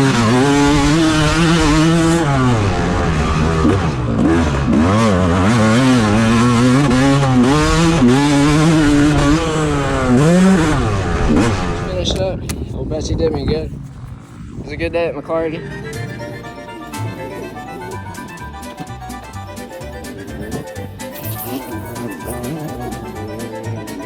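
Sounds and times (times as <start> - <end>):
dirt bike engine revving: 0.0 - 11.9, 15.5 - 24.0.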